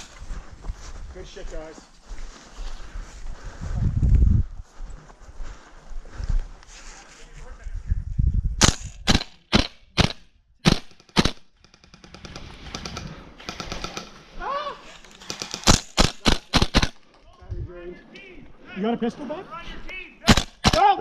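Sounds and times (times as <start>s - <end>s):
airsoft gun shots: 8.6s - 11.4s, 20.3s - 21.0s.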